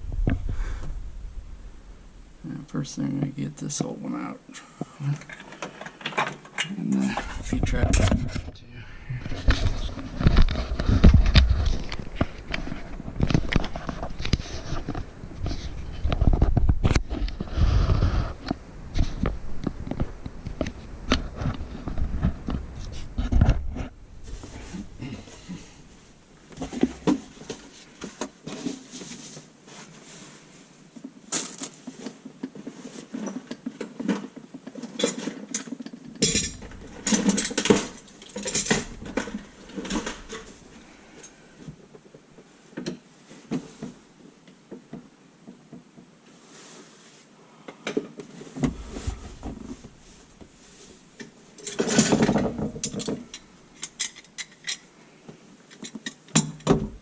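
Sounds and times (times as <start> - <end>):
tools clanking on sink drain parts: 35.0 - 40.4.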